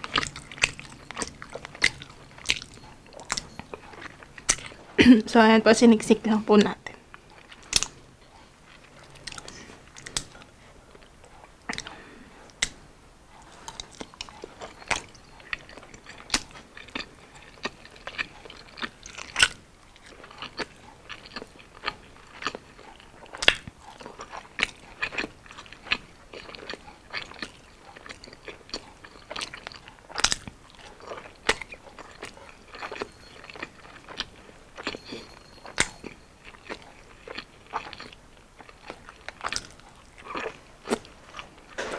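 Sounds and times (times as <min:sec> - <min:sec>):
crunchy chewing: 0:00.0 - 0:05.0, 0:06.4 - 0:41.9
wet mouth sounds: 0:00.0 - 0:05.2.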